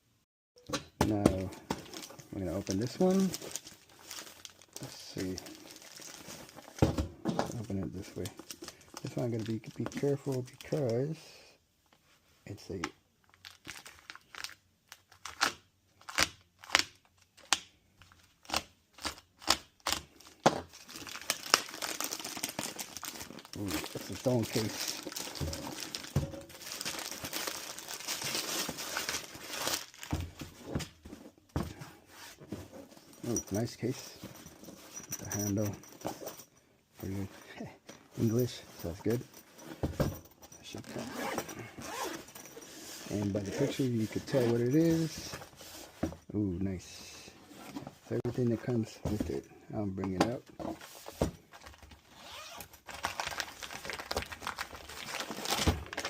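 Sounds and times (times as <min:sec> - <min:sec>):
packaging crinkling and rustling: 0:01.1 - 0:11.1, 0:13.2 - 0:35.7, 0:40.6 - 0:46.1, 0:50.1 - 0:56.0
rustling and scraping: 0:22.9 - 0:46.4, 0:47.3 - 0:49.4, 0:50.6 - 0:51.6.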